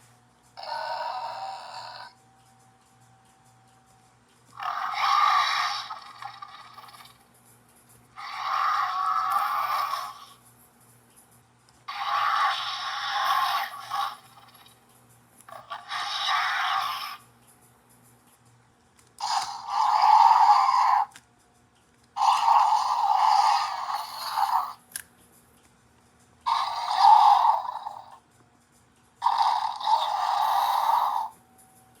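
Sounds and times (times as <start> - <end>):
toy dinosaur roaring: 0.6 - 2.2, 4.6 - 7.2, 8.2 - 10.4, 11.9 - 14.8, 15.5 - 17.2, 19.2 - 21.1, 22.2 - 24.8, 26.5 - 28.2, 29.2 - 31.4.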